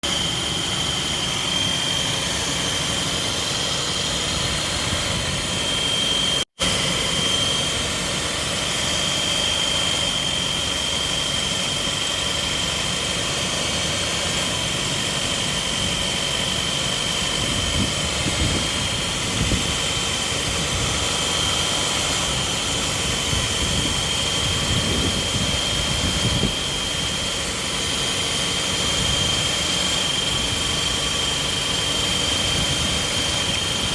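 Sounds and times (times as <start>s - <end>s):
car engine idling: 0.0s - 33.9s
high-pitched squeal: 0.0s - 33.9s.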